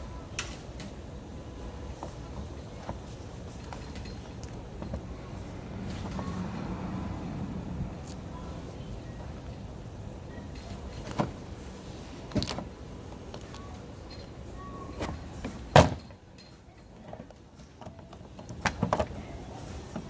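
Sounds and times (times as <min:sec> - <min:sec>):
low rumble: 0:05.0 - 0:10.0.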